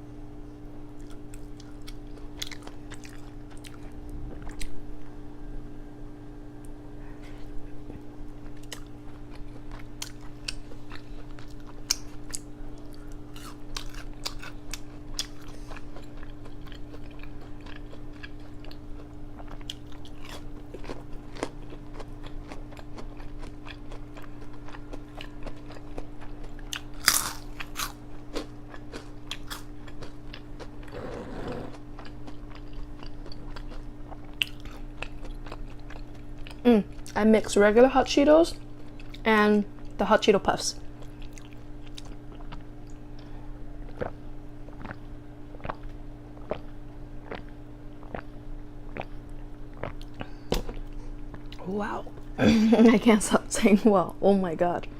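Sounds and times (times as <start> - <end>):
crunchy food chewing: 0.9 - 5.1, 8.2 - 37.2, 40.8 - 51.6.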